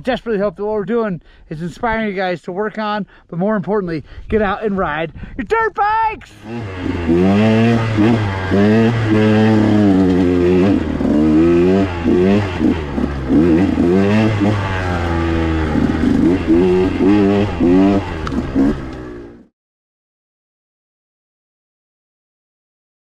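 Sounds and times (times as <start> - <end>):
two-stroke engine revving: 6.3 - 19.5.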